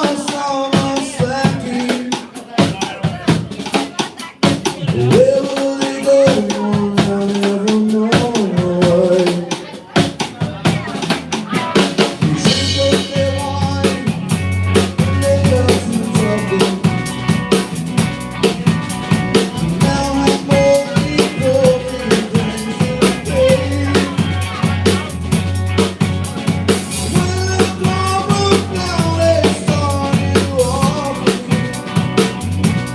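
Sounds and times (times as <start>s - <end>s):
drum kit groove: 0.0s - 32.9s
low bass part: 12.3s - 32.9s.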